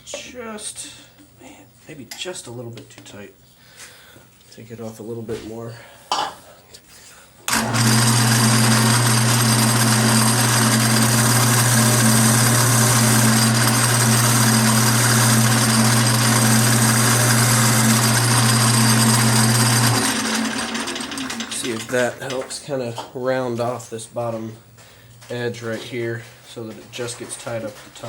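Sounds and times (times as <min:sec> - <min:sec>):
wood lathe motor hum: 0:07.5 - 0:22.5.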